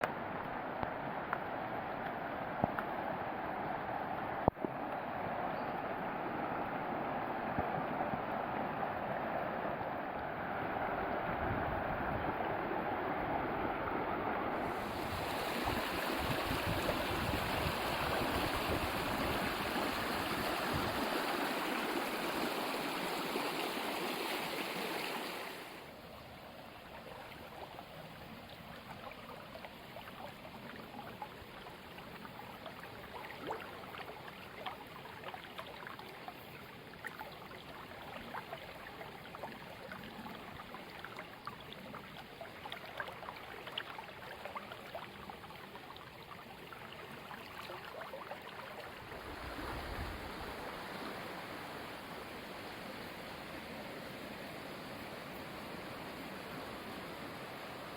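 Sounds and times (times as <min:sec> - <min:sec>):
stream water rushing: 0:00.0 - 0:41.6, 0:42.2 - 0:57.9
water trickling and dripping: 0:14.6 - 0:25.9, 0:26.9 - 0:57.9.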